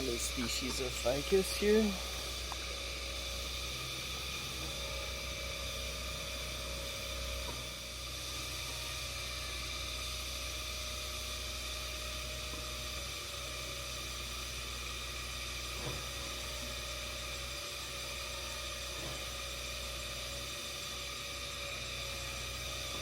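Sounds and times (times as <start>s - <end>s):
steady hiss: 0.0s - 9.4s.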